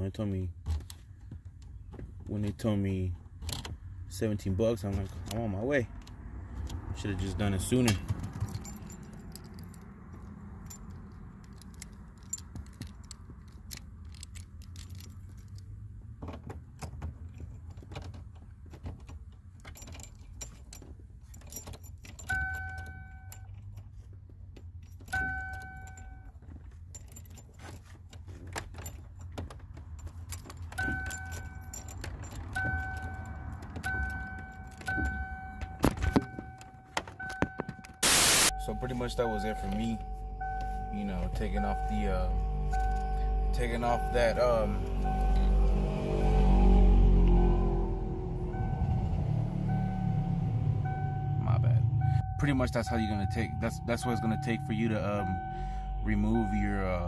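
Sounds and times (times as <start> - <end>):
car keys jangling and clicking: 0.2 - 45.7, 48.5 - 57.0
dashboard warning chime: 22.3 - 23.5, 25.1 - 26.4, 30.8 - 57.0
steady low hum: 38.0 - 46.7, 47.7 - 56.9.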